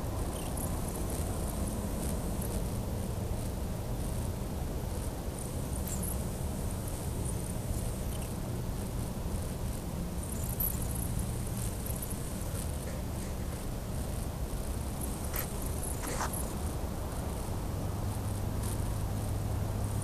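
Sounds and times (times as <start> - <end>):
faint high ticks and chirps: 0.1 - 20.0.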